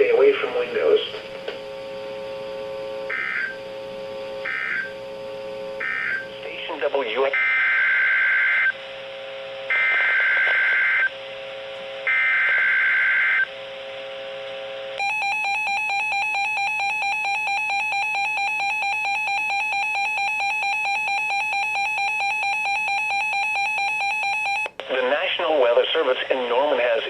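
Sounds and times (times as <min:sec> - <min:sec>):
buzzy digital data tone: 0:02.7 - 0:08.8.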